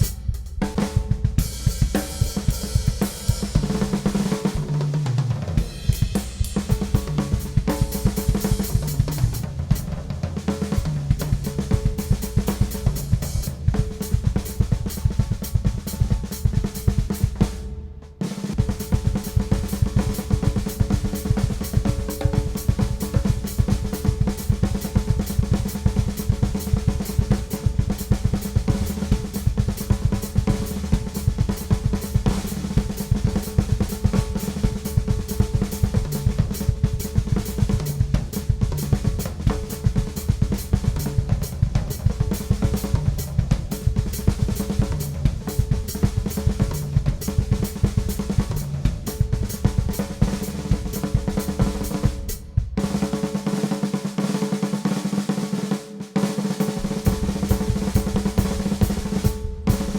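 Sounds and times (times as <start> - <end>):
bass drum: 0.0 - 17.7, 18.6 - 53.2, 56.8 - 59.9
snare drum: 49.2 - 59.9.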